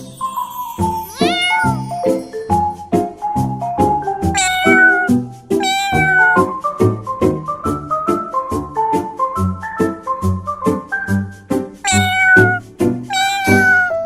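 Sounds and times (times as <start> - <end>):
cat meowing: 1.1 - 2.0, 4.4 - 6.6, 11.8 - 14.0.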